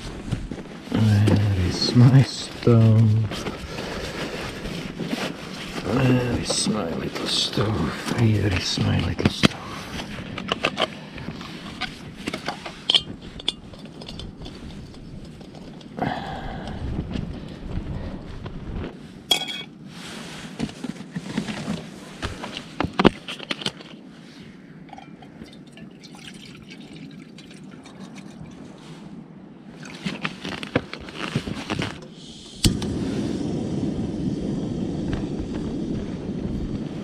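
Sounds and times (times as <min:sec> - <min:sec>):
cookware clattering: 0:19.3 - 0:19.7, 0:24.9 - 0:26.4
water pouring: 0:24.9 - 0:28.6
gas stove hissing: 0:32.0 - 0:37.0
stove igniter click: 0:32.6 - 0:33.0.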